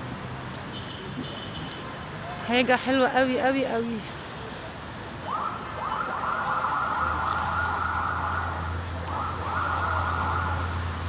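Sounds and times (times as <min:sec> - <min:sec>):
warbling emergency siren: 0:05.2 - 0:11.0.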